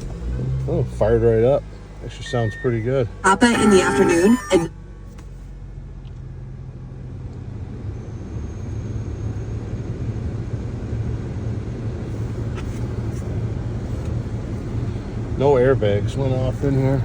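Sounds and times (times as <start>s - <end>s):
car engine idling: 0.0s - 6.5s, 11.5s - 17.0s.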